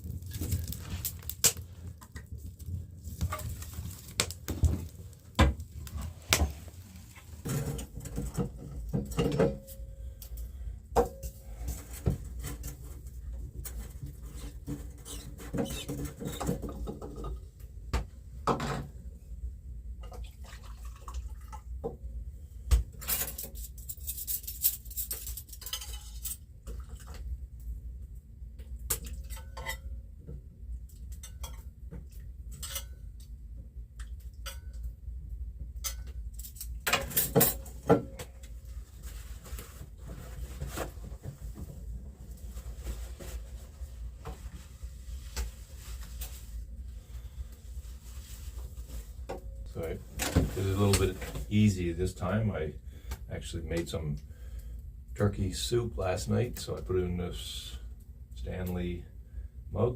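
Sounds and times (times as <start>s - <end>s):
dishes and utensils clattering: 7.4s - 9.8s, 23.0s - 27.0s, 35.8s - 38.3s.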